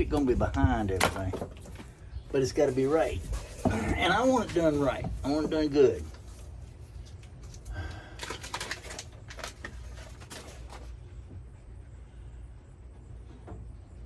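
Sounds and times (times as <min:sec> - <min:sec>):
crinkling sheets being handled: 0:00.0 - 0:11.0
steady low hum: 0:00.0 - 0:14.0.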